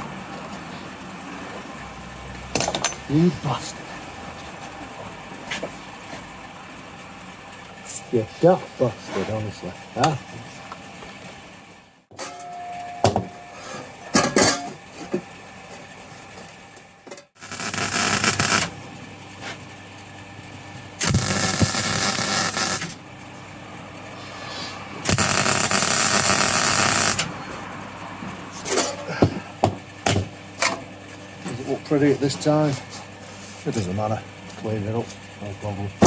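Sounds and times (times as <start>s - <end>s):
welding crackling hiss: 17.4s - 18.7s, 21.0s - 23.0s, 24.3s - 27.3s.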